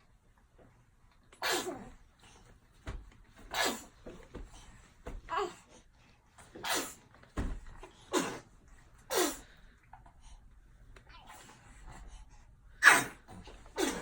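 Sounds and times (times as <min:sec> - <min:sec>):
baby sneezing: 0:01.4 - 0:02.0, 0:03.4 - 0:04.1, 0:06.5 - 0:07.1, 0:07.9 - 0:09.6, 0:12.8 - 0:14.0.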